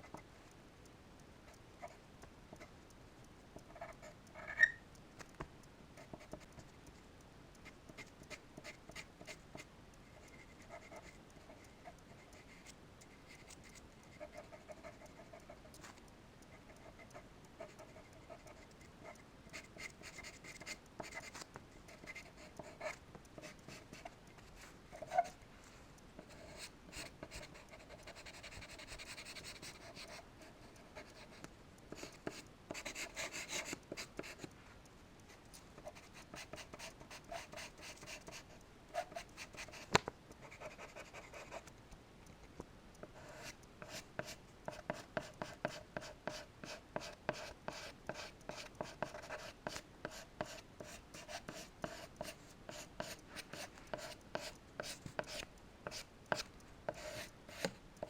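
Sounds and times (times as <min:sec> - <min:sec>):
soft steady rubbing: 0:05.9 - 0:41.8, 0:43.0 - 0:57.8
charcoal scratching on paper: 0:44.9 - 0:57.7.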